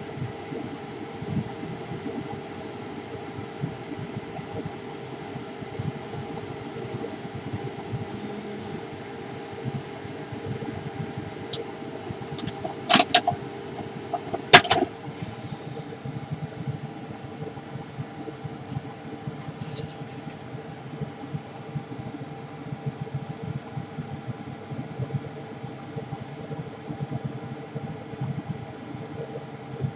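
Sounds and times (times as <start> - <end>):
laser engraver humming: 0.0 - 9.0, 11.0 - 17.3.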